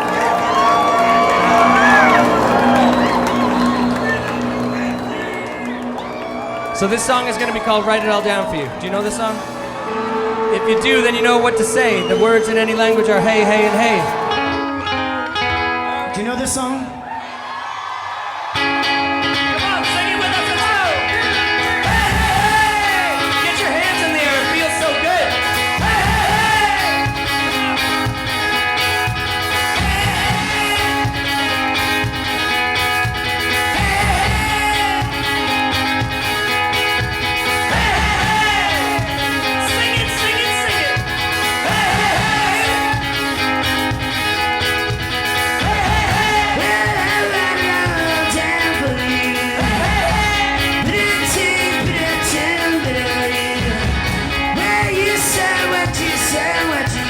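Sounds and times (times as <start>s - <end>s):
guitar: 0.0s - 57.0s
person singing: 9.2s - 15.4s, 19.6s - 27.6s, 29.5s - 32.0s, 33.5s - 35.6s, 37.5s - 43.9s, 45.4s - 57.0s
drum beat: 21.8s - 24.1s, 25.8s - 28.5s, 29.1s - 36.4s, 37.0s - 57.0s.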